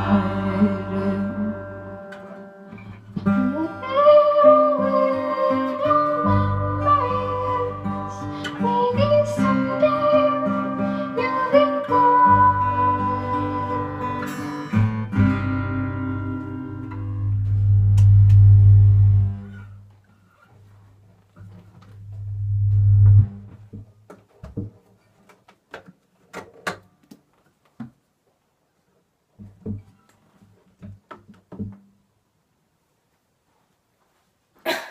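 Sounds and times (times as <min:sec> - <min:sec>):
acoustic guitar music: 0:00.0 - 0:23.8
deep low swells: 0:22.0 - 0:23.4.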